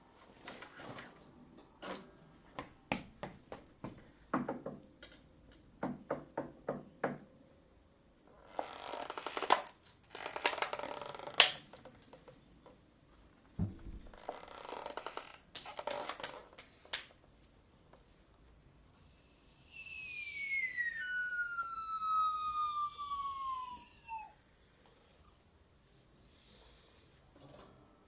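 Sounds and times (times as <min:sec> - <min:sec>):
dull low thump: 0:13.6 - 0:14.2.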